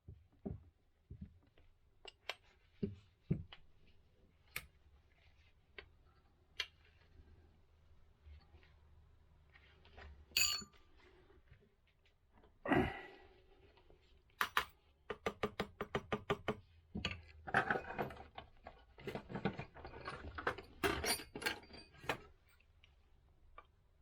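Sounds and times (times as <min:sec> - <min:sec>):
metallic clank with ring: 0:10.4 - 0:10.7.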